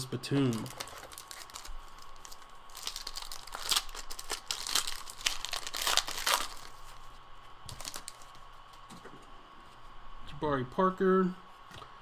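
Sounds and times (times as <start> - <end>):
foil wrapper tearing and crinkling: 0.4 - 7.1, 7.7 - 8.4.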